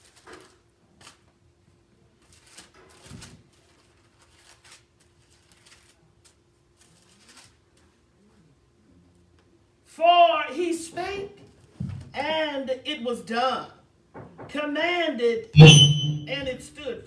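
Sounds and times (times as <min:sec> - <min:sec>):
pages rustling: 0:00.0 - 0:01.2, 0:02.2 - 0:07.9.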